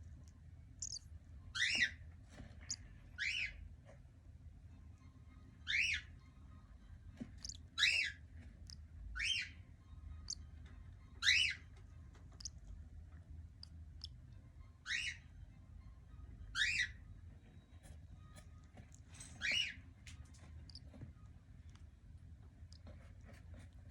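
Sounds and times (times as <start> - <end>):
high chirps: 0.8 - 1.0, 7.4 - 8.1.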